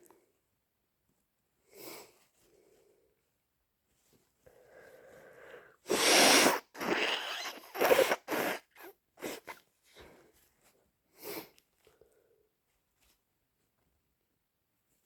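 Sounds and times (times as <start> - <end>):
person sneezing: 5.9 - 9.6.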